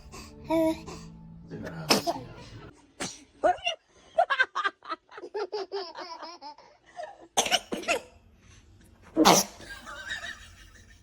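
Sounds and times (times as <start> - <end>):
baby sneezing: 1.9 - 2.3, 3.0 - 3.3, 7.4 - 8.1, 9.2 - 9.6.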